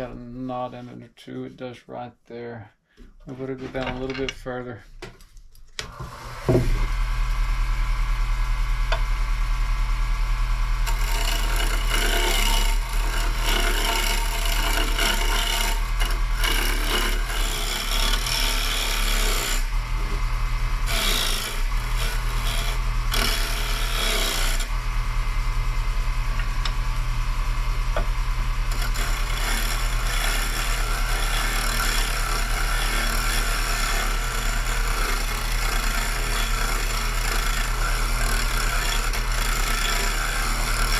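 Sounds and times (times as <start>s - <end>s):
turning tool scraping wood: 3.2s - 4.9s, 10.9s - 20.2s, 20.8s - 24.8s, 28.7s - 40.9s
wood lathe motor hum: 10.8s - 40.9s.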